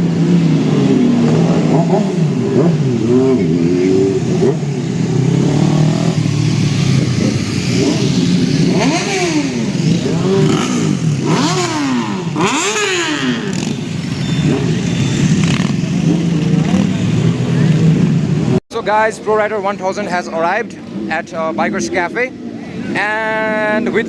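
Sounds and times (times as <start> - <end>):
motorcycle engines running: 0.0 - 18.6.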